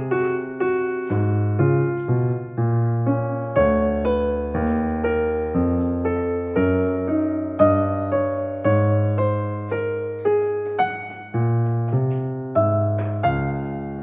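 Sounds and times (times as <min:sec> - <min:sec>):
piano notes over held bass: 0:00.0 - 0:14.0.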